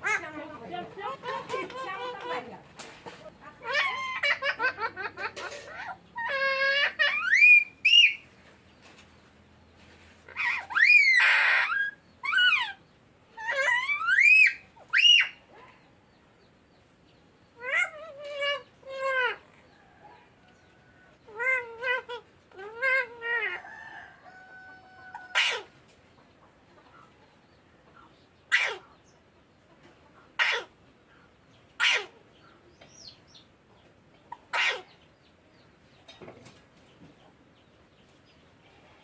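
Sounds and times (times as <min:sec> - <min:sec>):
parakeet squawks: 0:25.1 - 0:25.8, 0:28.5 - 0:28.9, 0:30.4 - 0:30.8, 0:31.8 - 0:32.2, 0:34.3 - 0:35.0
parakeet warbling calls: 0:25.1 - 0:25.8, 0:28.5 - 0:29.0, 0:31.8 - 0:32.2, 0:34.5 - 0:35.0.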